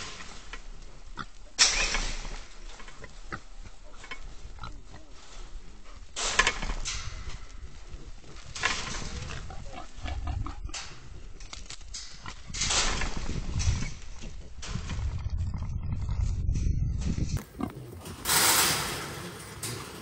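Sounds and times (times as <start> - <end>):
hogs grunting and squealing: 0.7 - 6.1, 7.6 - 11.4, 17.4 - 18.3.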